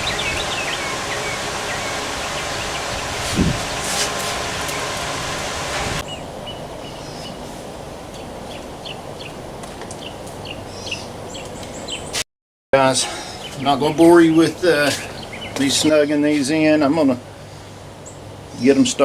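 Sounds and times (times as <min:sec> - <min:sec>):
bird chirps: 0:00.0 - 0:03.0, 0:10.0 - 0:12.2, 0:13.2 - 0:15.9
outdoor background noise: 0:00.0 - 0:12.2, 0:12.8 - 0:19.0.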